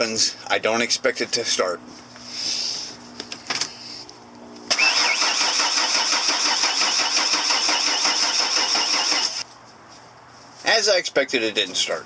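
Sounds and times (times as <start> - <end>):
starter cranking engine: 4.7 - 9.4.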